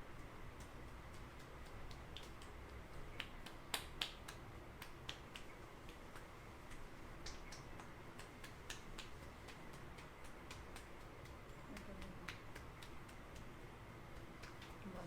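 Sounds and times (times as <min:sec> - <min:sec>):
hair cracking snaps: 0:00.6 - 0:15.0.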